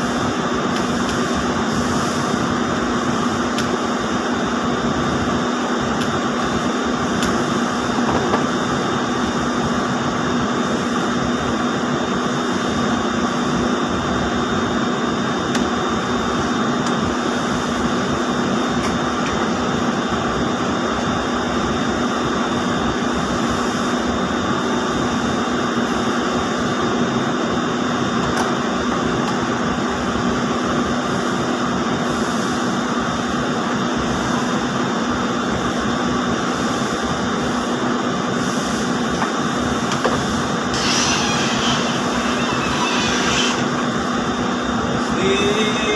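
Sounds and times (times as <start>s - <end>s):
high whine: 0.0s - 45.9s
spinning machines droning: 32.6s - 45.9s.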